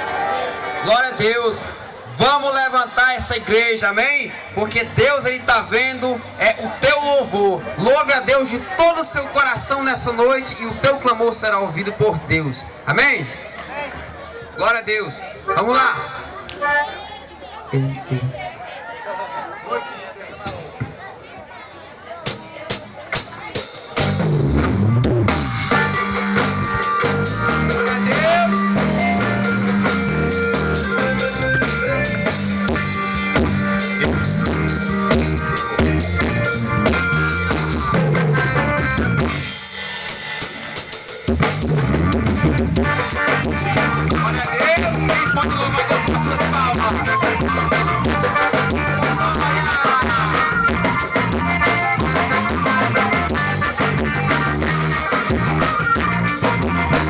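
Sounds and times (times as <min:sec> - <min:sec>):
live band playing: 0:00.0 - 0:11.2, 0:20.4 - 0:21.5, 0:22.2 - 0:57.0
drum kit: 0:22.3 - 0:57.0
bass: 0:23.7 - 0:39.7, 0:41.2 - 0:57.0.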